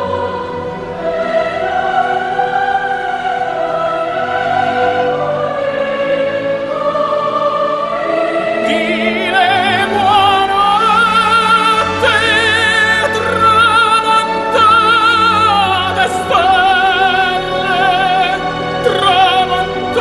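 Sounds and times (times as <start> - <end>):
operatic singing: 0.0 - 20.0
orchestral accompaniment: 0.0 - 20.0
voice singing with wide vibrato: 0.0 - 20.0.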